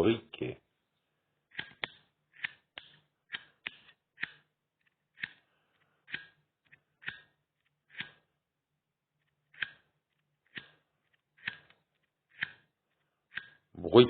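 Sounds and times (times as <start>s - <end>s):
lighter clicking: 13.3s - 13.6s.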